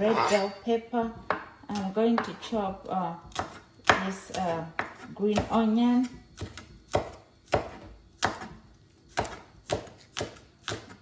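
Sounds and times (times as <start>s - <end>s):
knife chopping on cutting board: 3.3s - 11.0s.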